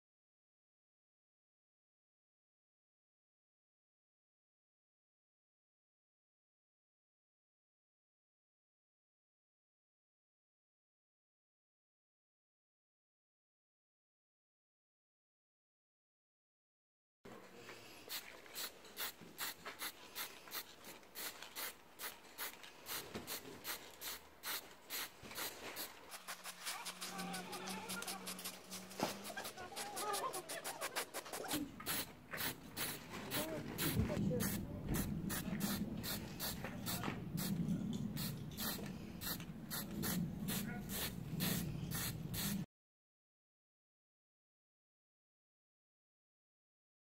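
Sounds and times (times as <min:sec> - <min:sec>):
hand rubbing across a surface: 0:17.8 - 0:37.0
aerosol paint can spraying: 0:18.1 - 0:37.5, 0:38.2 - 0:42.6.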